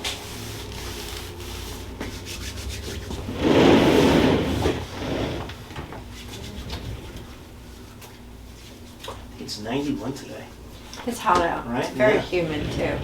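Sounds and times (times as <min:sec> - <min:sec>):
rubbing scraping friction: 0:00.2 - 0:07.7, 0:12.0 - 0:13.0.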